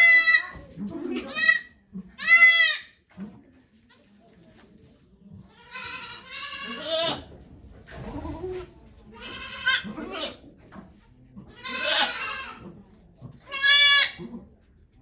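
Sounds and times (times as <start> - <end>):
goat bleating: 0.0 - 2.9, 5.6 - 7.3, 8.2 - 10.4, 11.5 - 12.6, 13.5 - 14.2.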